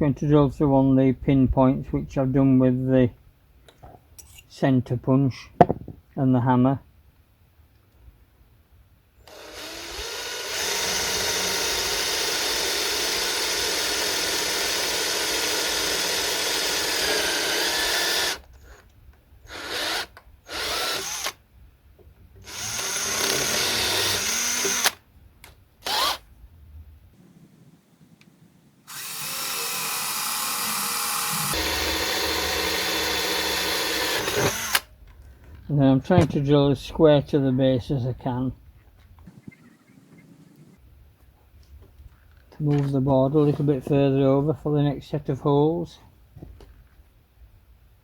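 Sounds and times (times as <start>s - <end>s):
electric drill drilling into wood: 9.3s - 18.8s, 19.5s - 21.4s, 22.4s - 25.0s, 25.8s - 26.2s, 28.9s - 34.9s.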